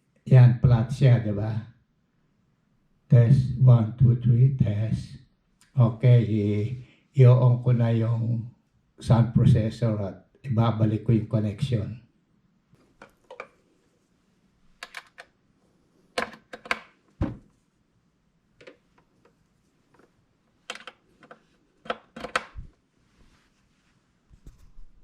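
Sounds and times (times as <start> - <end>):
cable jacks plugging in: 20.7 - 22.7.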